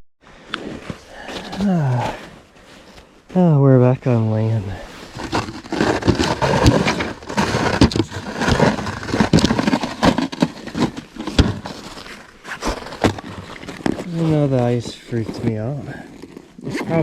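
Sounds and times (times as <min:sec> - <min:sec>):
scraping and knocking: 0:04.6 - 0:17.0.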